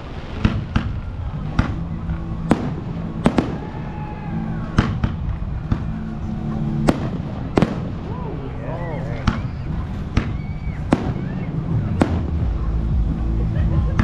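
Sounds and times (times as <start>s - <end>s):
fireworks sharp bangs: 0.0s - 14.0s
low rumble of fireworks display: 0.0s - 14.0s.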